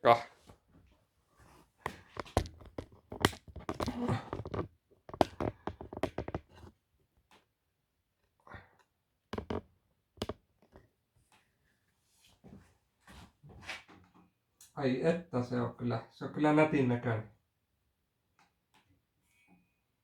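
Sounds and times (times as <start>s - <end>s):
packaging knocks and rustling: 1.9s - 6.7s.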